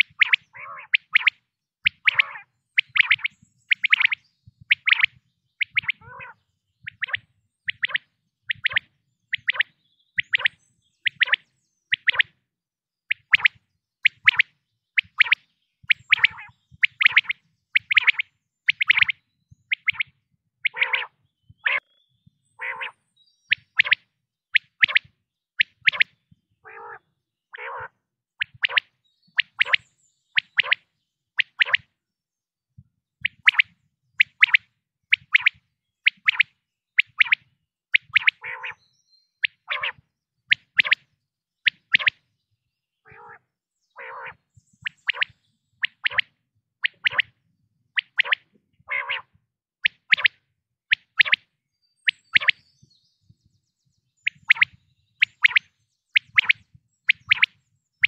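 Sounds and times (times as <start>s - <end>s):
quail calling: 0.0s - 12.3s, 15.0s - 22.0s, 22.6s - 24.0s, 24.6s - 29.8s, 30.4s - 30.8s, 38.0s - 38.8s, 39.4s - 41.0s, 41.7s - 42.2s, 43.1s - 47.3s, 48.0s - 50.4s, 52.1s - 52.6s, 56.2s - 57.5s.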